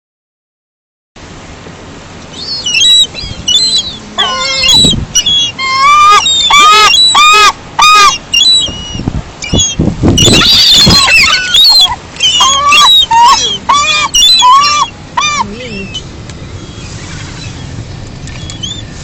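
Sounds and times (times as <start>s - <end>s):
gulls calling: 2.2s - 19.0s.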